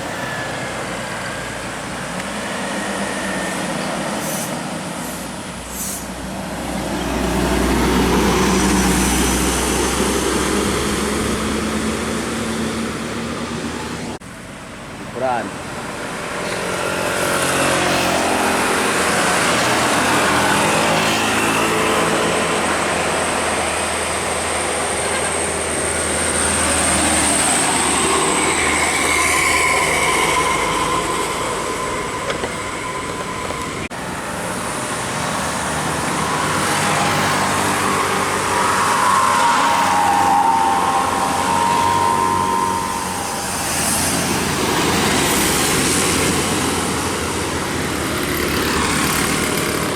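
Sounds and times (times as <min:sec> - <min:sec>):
bus diesel engines passing: 0:00.0 - 0:49.9
drawn-out high tones: 0:18.4 - 0:47.5.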